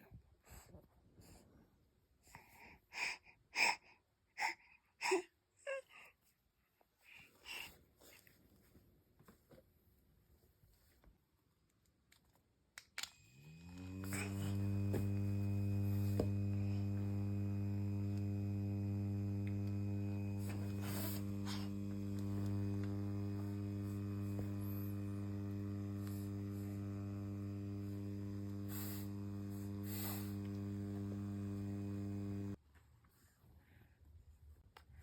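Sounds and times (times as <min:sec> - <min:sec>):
electric fan motor humming: 0:13.2 - 0:32.6.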